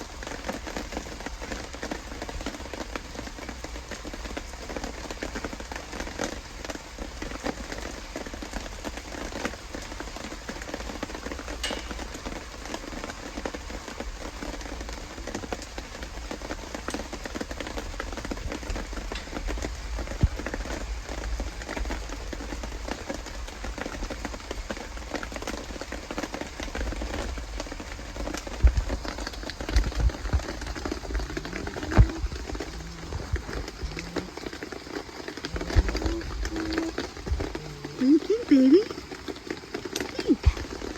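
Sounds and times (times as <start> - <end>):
rain pattering: 0.0 - 40.9
sharp low thumps: 29.8 - 34.4.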